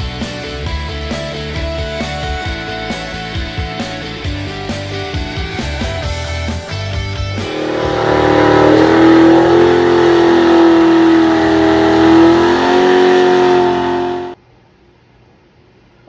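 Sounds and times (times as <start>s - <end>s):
car engine revving high: 7.4s - 14.4s.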